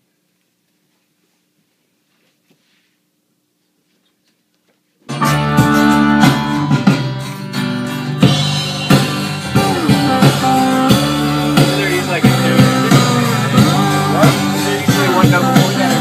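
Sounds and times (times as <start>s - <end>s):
guitar-led band music: 5.1s - 16.0s.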